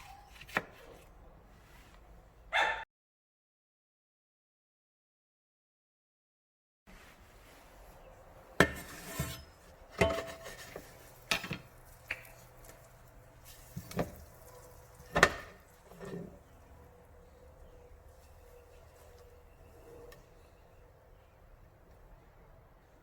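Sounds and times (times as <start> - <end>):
dishes and utensils clinking: 8.6 - 11.7.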